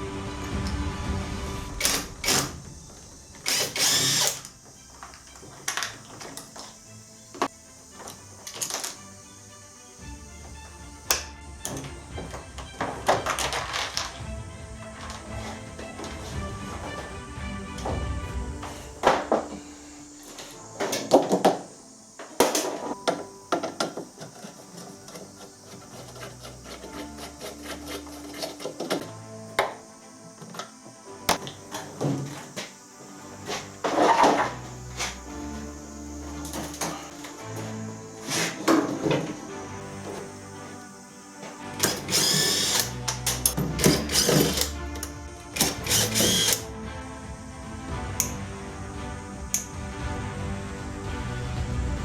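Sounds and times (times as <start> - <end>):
quiet background music: 0.0 - 52.0
power drill-driver bursts: 1.8 - 2.6, 3.4 - 4.6, 41.8 - 46.7
tools and plastic parts clattering: 1.8 - 9.0, 11.6 - 14.2, 15.0 - 17.1, 17.7 - 29.8, 30.4 - 32.8, 33.4 - 35.2, 36.4 - 40.3, 41.4 - 46.7.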